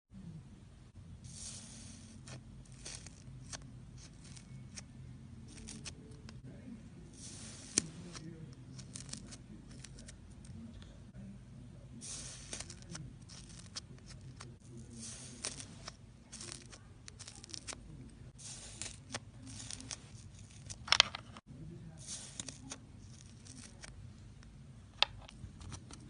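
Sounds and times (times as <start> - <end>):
dried slime crust crackling: 1.3 - 6.4, 7.2 - 10.5, 12.0 - 21.0, 21.9 - 24.0.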